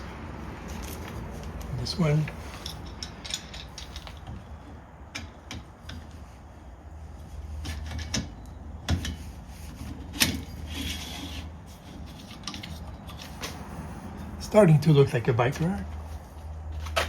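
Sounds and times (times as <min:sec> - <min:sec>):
parts clicking and knocking: 0:00.6 - 0:06.5, 0:07.2 - 0:14.4.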